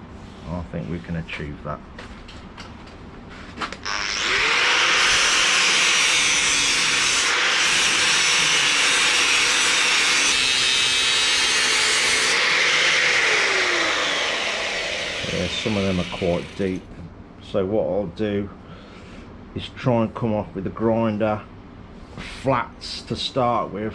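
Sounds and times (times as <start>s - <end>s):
angle grinder grinding steel: 3.9s - 16.8s.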